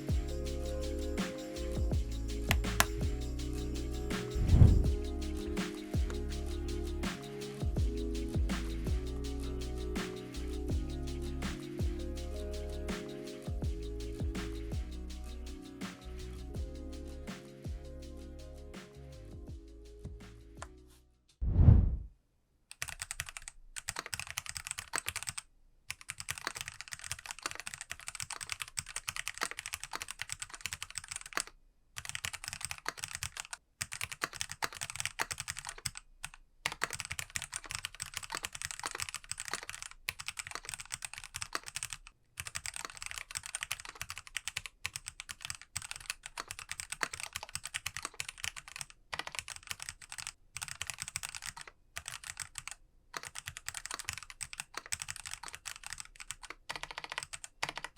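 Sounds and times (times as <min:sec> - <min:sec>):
mechanical keyboard typing: 0:02.3 - 0:03.2, 0:04.2 - 0:06.4, 0:22.7 - 0:57.9.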